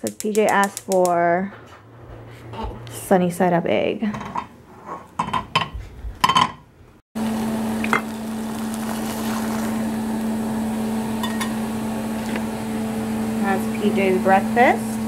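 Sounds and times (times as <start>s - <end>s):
kitchen appliance humming: 7.2s - 15.0s.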